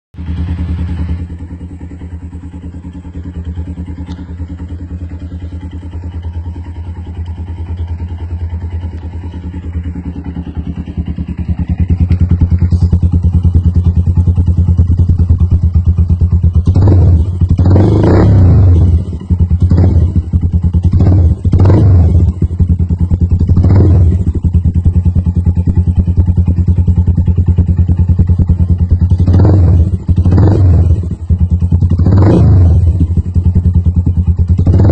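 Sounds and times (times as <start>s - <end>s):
motorcycle engine idling and revving: 0.2s - 34.9s.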